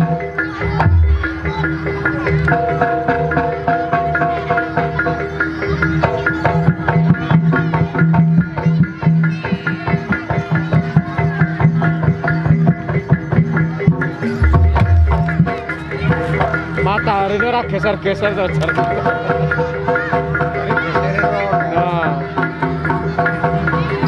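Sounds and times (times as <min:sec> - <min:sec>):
ringing pitched percussion: 0:00.0 - 0:03.9, 0:08.4 - 0:16.9
hand drums beating: 0:00.0 - 0:24.0.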